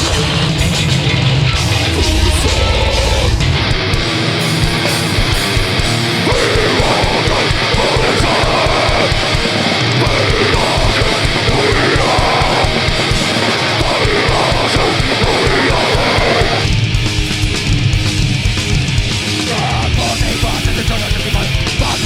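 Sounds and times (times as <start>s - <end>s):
distorted guitars: 0.0s - 22.0s
fast bass drum beats: 0.0s - 22.0s
shouted vocals: 6.1s - 16.6s.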